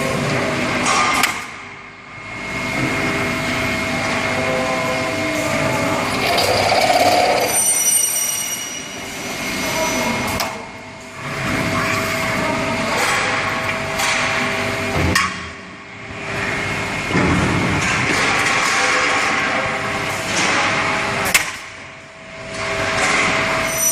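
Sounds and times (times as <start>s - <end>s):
drilling machine motor whine: 5.9s - 8.4s.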